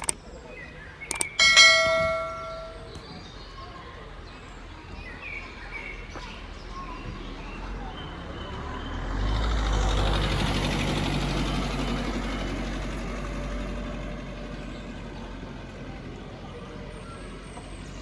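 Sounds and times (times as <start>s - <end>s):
motor vehicle driving past: 7.5s - 16.0s.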